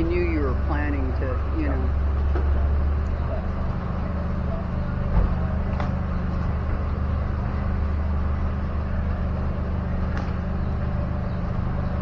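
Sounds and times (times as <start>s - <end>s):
car engine drone from inside cabin: 0.0s - 12.0s
road noise: 0.0s - 12.0s.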